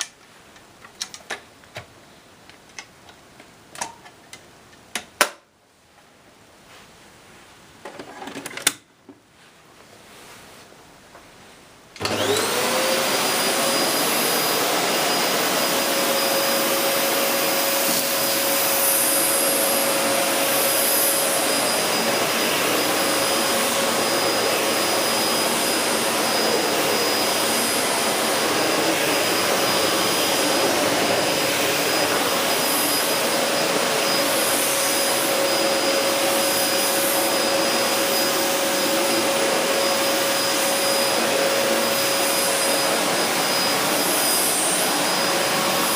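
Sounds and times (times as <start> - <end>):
vacuum cleaner running: 12.0 - 45.9.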